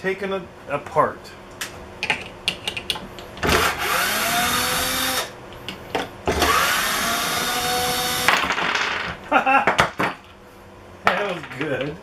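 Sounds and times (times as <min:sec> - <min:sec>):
power drill-driver whirring: 0:03.4 - 0:05.3.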